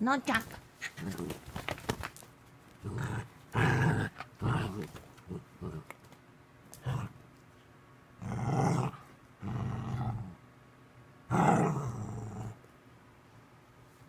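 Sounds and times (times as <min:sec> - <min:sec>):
dog growling: 0:00.8 - 0:01.5, 0:02.8 - 0:06.0, 0:06.8 - 0:07.2, 0:08.2 - 0:10.4, 0:11.3 - 0:12.6.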